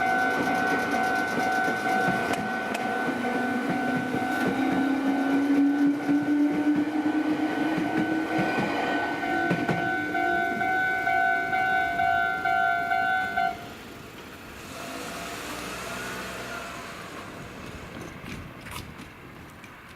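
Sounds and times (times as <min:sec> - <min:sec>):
level crossing bell ringing: 0:00.0 - 0:05.1, 0:09.1 - 0:13.6
train wheels knocking on rail joints: 0:00.0 - 0:13.2
low train hum rising in pitch: 0:00.0 - 0:18.3.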